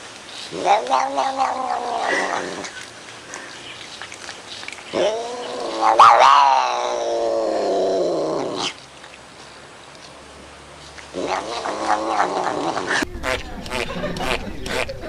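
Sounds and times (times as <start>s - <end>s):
cat yowling: 5.0s - 8.6s.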